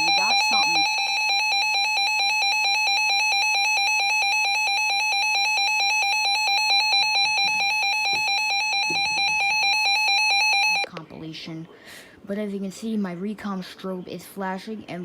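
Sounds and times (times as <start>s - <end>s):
rapidly pulsing electronic alarm tone: 0.0s - 10.9s.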